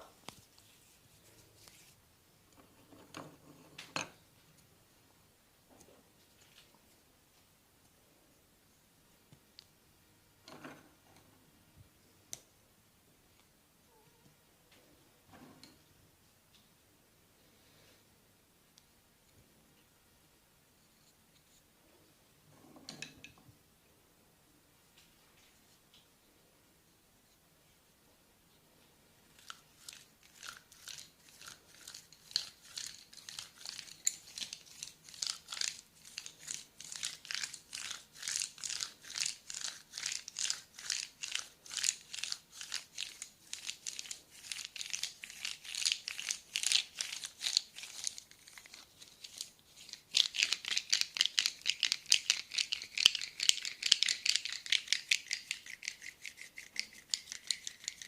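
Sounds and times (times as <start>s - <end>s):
massage strokes rustling: 0.0s - 2.0s.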